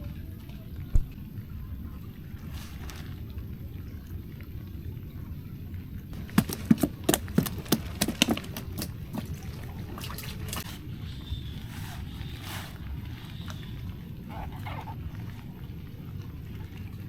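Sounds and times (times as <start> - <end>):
low wind rumble: 0.0 - 6.4
sharp knocks and splashes: 6.1 - 15.4.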